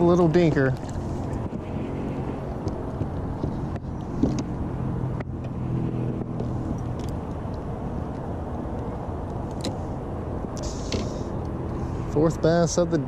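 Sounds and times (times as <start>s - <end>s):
highway traffic drone: 0.0s - 13.0s.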